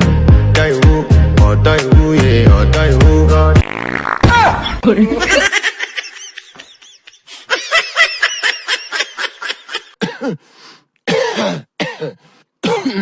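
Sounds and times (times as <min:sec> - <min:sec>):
person laughing: 0:04.4 - 0:10.0.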